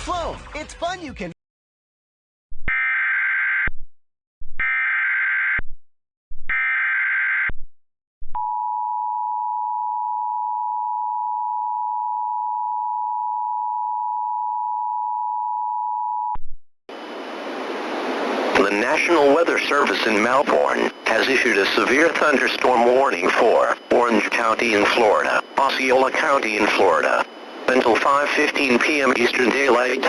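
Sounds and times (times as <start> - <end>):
warbling digital data tones: 18.4 - 30.0
two-tone attention signal: 18.6 - 30.0.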